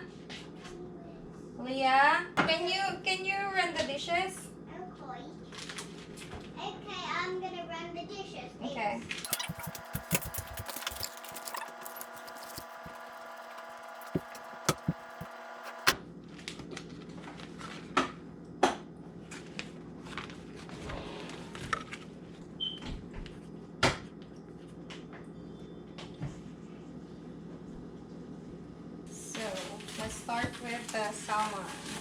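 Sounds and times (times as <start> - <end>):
steady multi-tone hum: 9.2 - 16.0
kitchen items knocking and clicking: 9.3 - 16.0.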